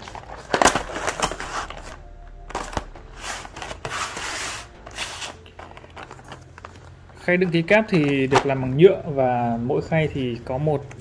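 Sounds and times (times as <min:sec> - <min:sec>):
paper sheets rustling: 0:00.0 - 0:08.6.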